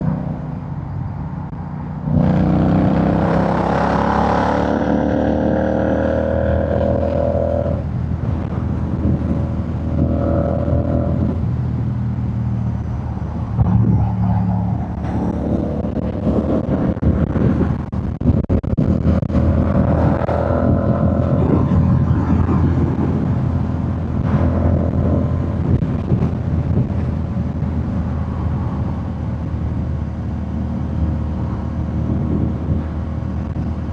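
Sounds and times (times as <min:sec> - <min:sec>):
motorcycle engine revving: 0:01.9 - 0:11.9, 0:13.6 - 0:29.0.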